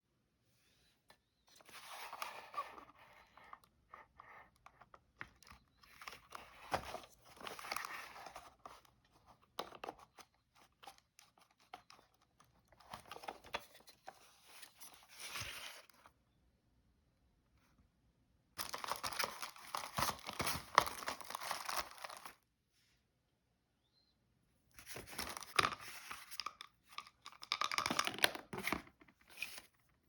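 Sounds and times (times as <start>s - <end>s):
plastic rustling and crinkling: 18.6s - 22.4s.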